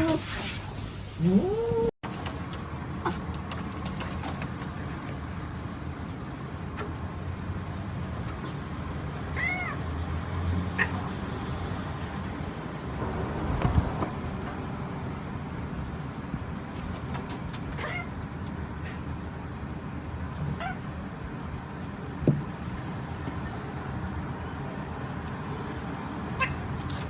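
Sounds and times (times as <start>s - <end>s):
cat meowing: 9.4s - 9.8s.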